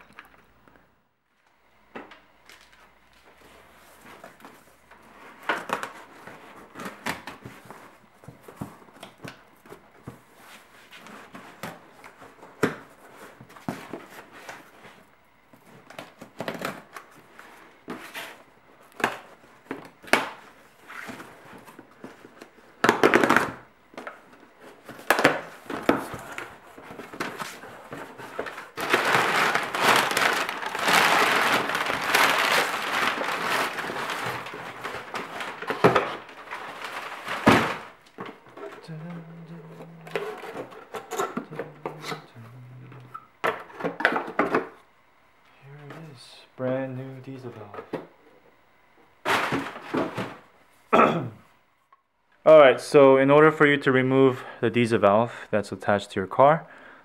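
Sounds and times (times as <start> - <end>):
crinkling rustle: 24.6 - 40.8.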